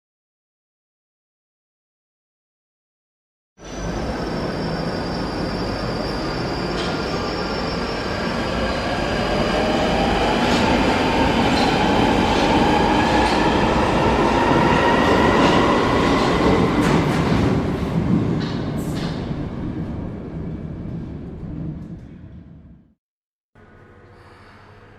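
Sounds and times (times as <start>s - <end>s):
subway train rumble: 3.6s - 23.0s.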